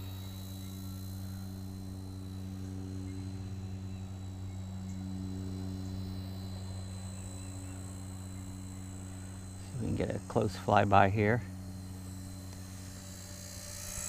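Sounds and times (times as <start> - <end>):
high motor whine: 0.0 - 14.0
rc helicopter rotor hum: 0.0 - 14.0.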